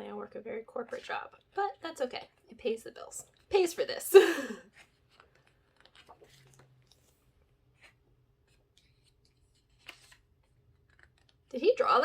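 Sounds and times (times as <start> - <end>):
pages rustling: 4.7 - 11.5.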